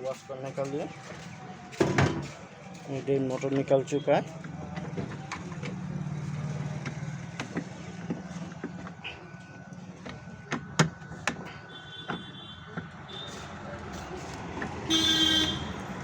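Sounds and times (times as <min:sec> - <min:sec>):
low hum of motor traffic: 0:00.0 - 0:16.0
sharp clicks and knocks: 0:06.8 - 0:09.0.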